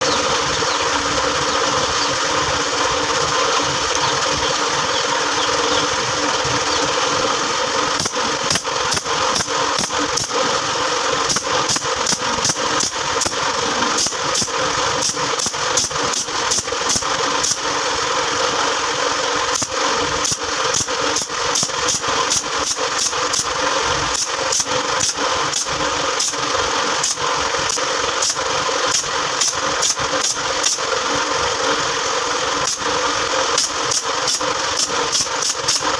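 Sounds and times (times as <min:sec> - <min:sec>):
steady machine drone: 0:00.0 - 0:35.9
nail gun firing: 0:07.9 - 0:17.7, 0:19.5 - 0:26.4, 0:27.0 - 0:30.9, 0:32.6 - 0:35.9.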